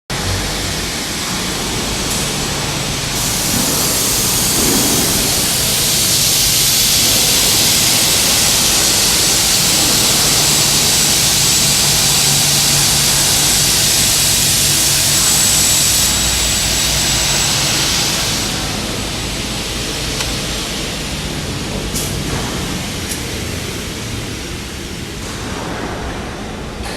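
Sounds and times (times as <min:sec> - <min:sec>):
cutting saw motor hum: 0:00.2 - 0:21.2.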